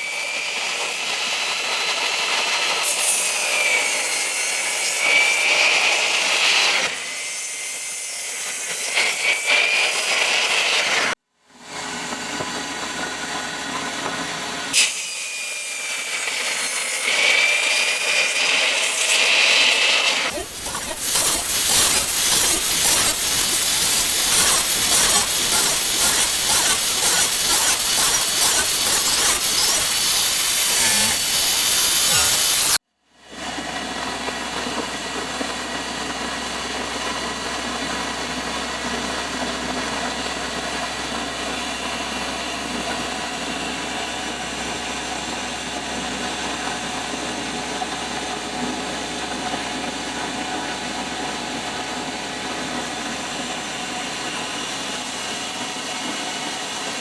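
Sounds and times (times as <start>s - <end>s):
power tool cutting wood: 0.0s - 11.1s, 14.0s - 32.8s
steady machine hum: 20.3s - 32.8s.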